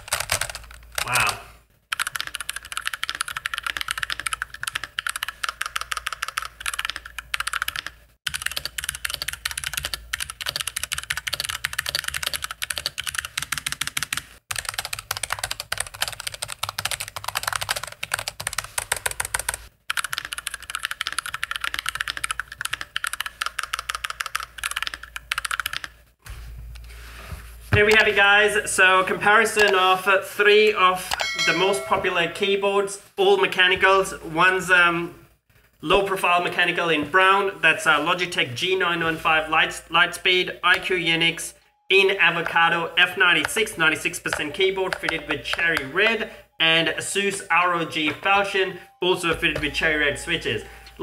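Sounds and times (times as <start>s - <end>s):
typing on mechanical keyboard: 0.0s - 26.0s.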